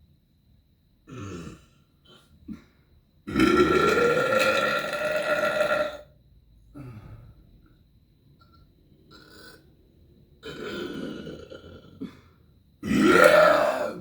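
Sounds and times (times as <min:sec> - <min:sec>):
person burping loudly: 0:01.1 - 0:01.7, 0:03.3 - 0:06.1, 0:10.4 - 0:14.0.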